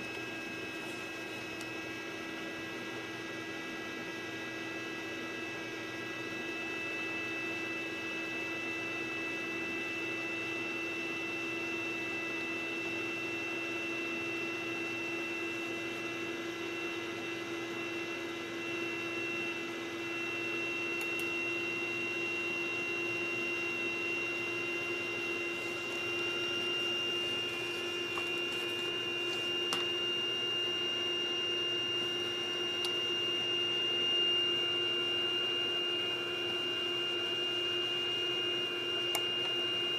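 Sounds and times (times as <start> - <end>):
computer fan whirring: 0.0 - 39.9
low electrical hum: 7.5 - 39.9
high-pitched electrical whine: 11.8 - 38.2.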